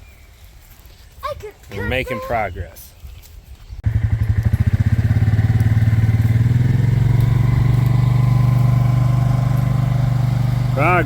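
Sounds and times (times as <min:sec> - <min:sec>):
small engine running: 0:03.8 - 0:11.0.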